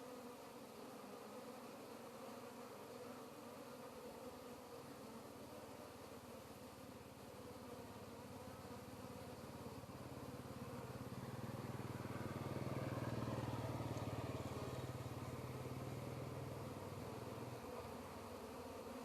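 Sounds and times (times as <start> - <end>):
small engine humming: 8.1 - 18.6.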